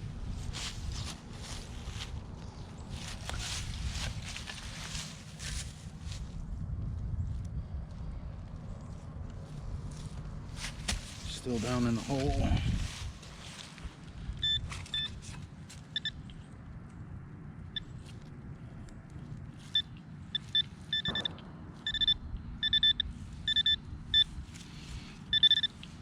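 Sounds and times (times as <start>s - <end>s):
metal detector beeping: 14.4s - 15.3s, 15.9s - 16.2s, 19.7s - 24.4s, 25.3s - 26.0s.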